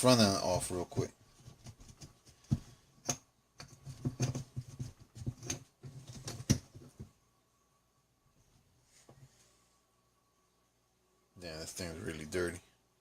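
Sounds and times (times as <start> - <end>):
plastic and metal parts handled: 1.3 - 7.1.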